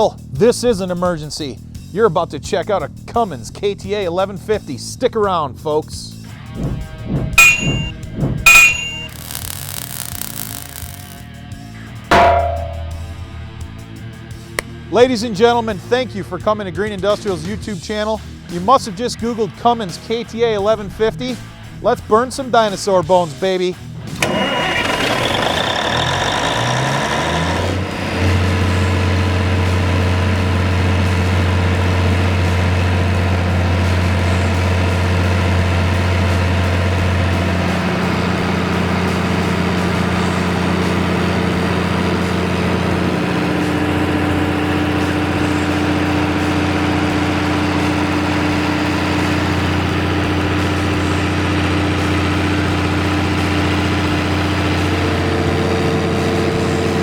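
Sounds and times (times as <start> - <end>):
diesel generator engine running: 24.1 - 57.0.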